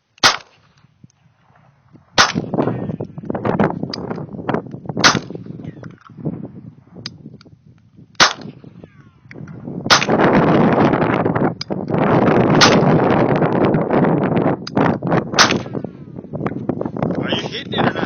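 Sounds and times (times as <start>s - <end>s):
pistol shots: 0.2s - 0.8s, 2.2s - 2.6s, 5.0s - 5.7s, 8.2s - 10.4s, 12.5s - 13.0s, 15.3s - 15.9s.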